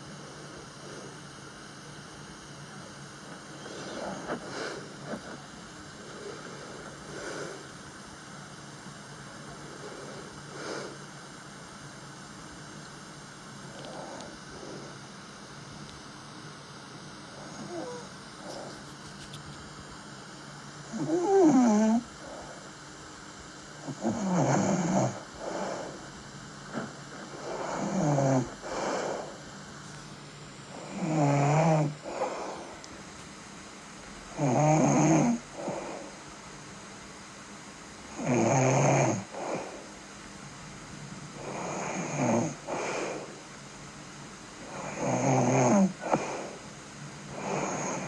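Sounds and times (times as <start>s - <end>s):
person breathing noisily: 0.0s - 1.8s, 3.0s - 11.5s, 13.6s - 15.3s, 17.3s - 19.4s, 20.4s - 22.9s, 23.8s - 33.1s, 35.3s - 36.2s, 39.2s - 40.0s, 41.4s - 43.6s, 45.8s - 46.7s
steady hiss: 0.0s - 38.3s
person snoring: 2.8s - 7.8s, 9.3s - 11.2s, 13.7s - 15.0s, 17.3s - 18.9s, 20.8s - 22.8s, 23.8s - 29.5s, 30.7s - 32.9s, 34.3s - 36.2s, 38.1s - 39.9s, 41.4s - 43.5s, 44.6s - 46.7s, 47.3s - 48.0s.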